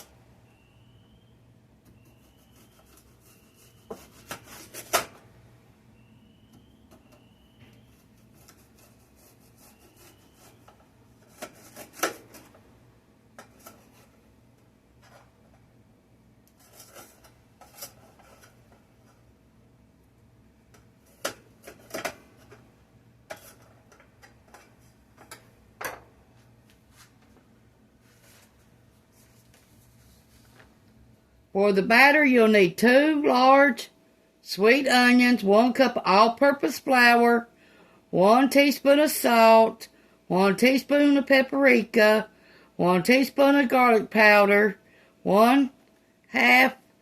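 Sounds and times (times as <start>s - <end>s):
faint steady hum: 0.0s - 47.0s.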